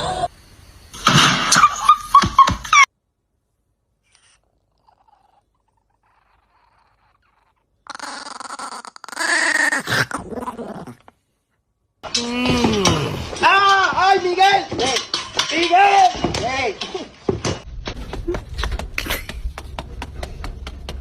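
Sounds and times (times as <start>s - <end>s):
animal growling: 4.5s - 11.1s.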